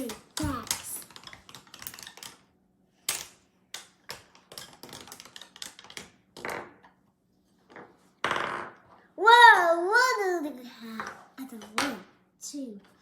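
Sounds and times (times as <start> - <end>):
plastic toy pieces clicking: 0.0 - 2.5, 3.1 - 6.2.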